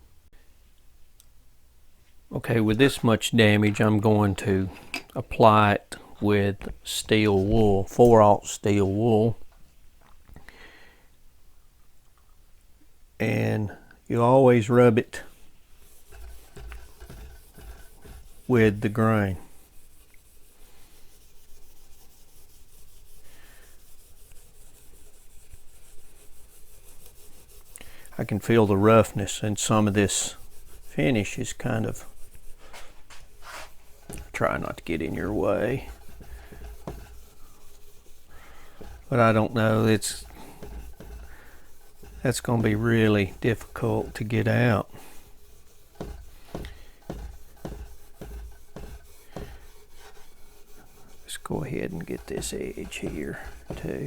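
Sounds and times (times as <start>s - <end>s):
steel wool scrubbing wood: 14.8s - 54.0s.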